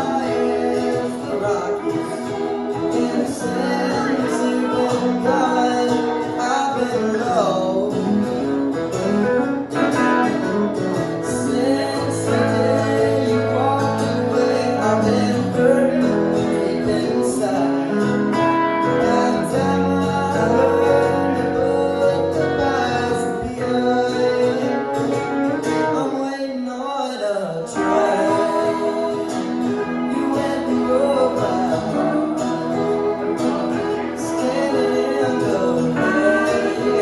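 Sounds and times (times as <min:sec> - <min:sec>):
strummed acoustic guitar: 0:00.0 - 0:37.0
bending melodic line: 0:07.5 - 0:26.0.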